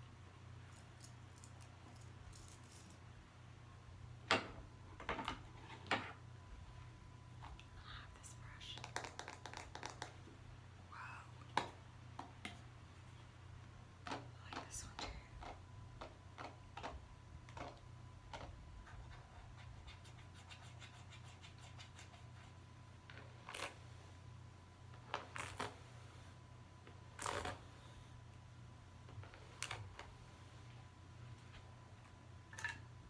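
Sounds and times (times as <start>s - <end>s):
faint steady hum: 0.0s - 33.0s
soft scratching and clicking: 7.4s - 10.2s.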